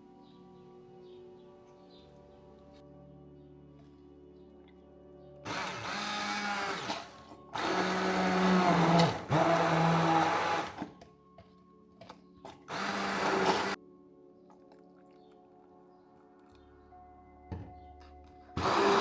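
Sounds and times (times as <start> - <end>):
blender motor pulsing: 5.5 - 10.9, 12.7 - 13.8, 18.6 - 19.0.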